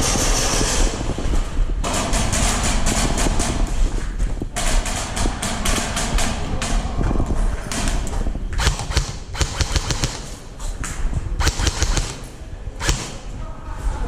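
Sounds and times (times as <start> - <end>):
airsoft gun shots: 8.6 - 10.4, 11.4 - 13.3.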